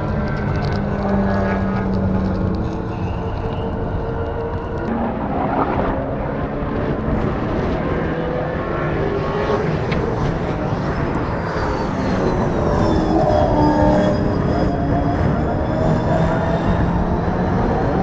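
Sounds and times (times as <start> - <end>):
race car engine at speed: 4.9 - 18.0.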